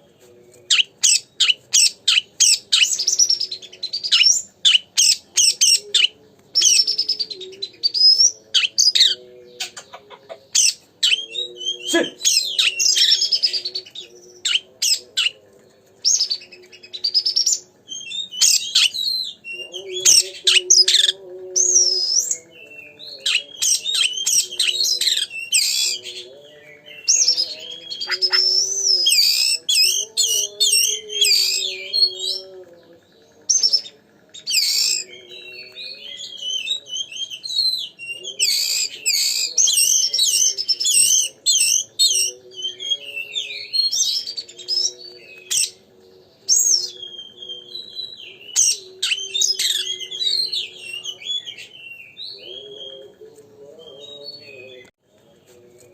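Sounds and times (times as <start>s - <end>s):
songbird whistles and trills: 16.0s - 32.5s, 33.4s - 53.2s.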